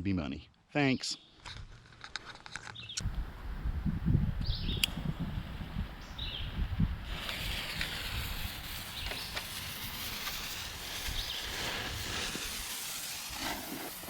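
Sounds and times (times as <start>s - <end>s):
smoke bomb hissing: 6.2s - 14.0s.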